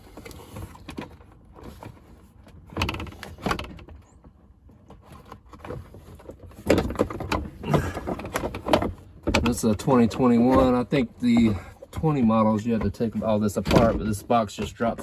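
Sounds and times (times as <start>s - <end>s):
plastic box knocking and rattling: 5.5s - 15.0s.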